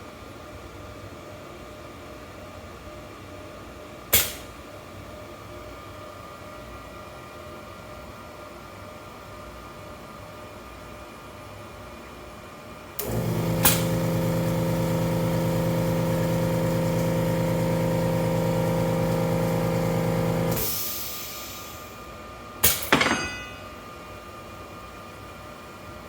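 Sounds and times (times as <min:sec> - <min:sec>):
click: 0:13.0 - 0:13.8
motor humming: 0:13.0 - 0:20.7
metal tableware clinks: 0:22.8 - 0:23.7.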